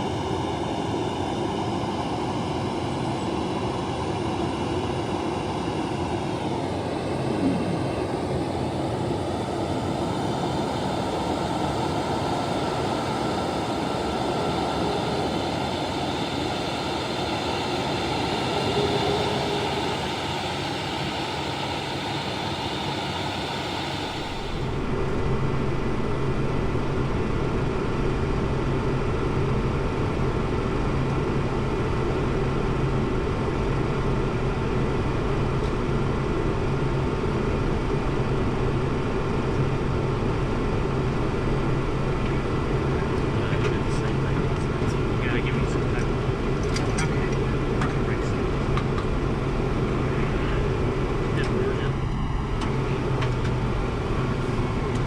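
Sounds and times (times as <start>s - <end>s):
jet engines and airflow rushing: 0.0s - 55.0s
tone falling in pitch: 7.3s - 8.2s.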